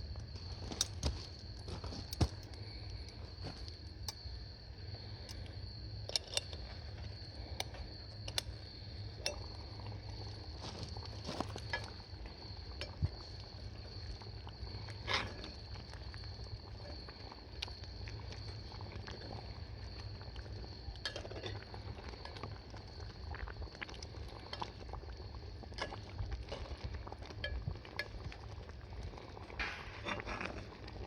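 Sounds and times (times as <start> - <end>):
wood fire crackling: 0.0 - 31.0
small metallic clinks: 6.0 - 6.7.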